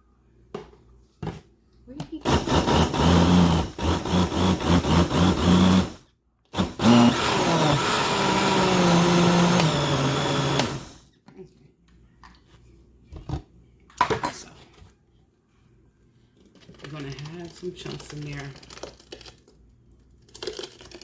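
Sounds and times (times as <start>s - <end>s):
blender motor running: 2.2s - 11.0s.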